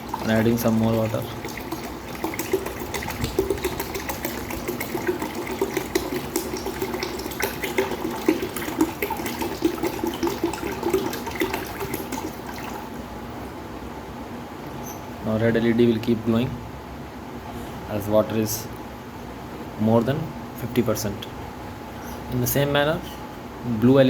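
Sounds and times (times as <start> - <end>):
water pouring into container: 0.0 - 13.1.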